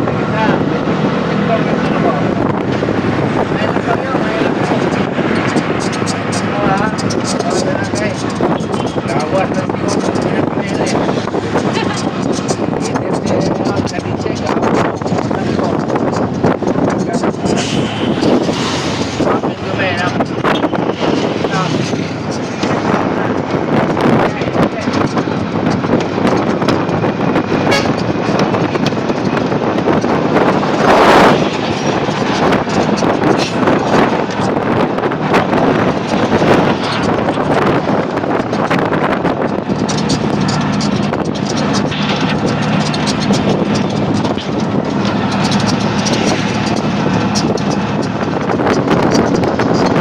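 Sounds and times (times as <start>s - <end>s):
road traffic passing: 0.0s - 50.0s
vehicle engine running: 0.0s - 50.0s
wind buffeting microphone: 0.0s - 50.0s.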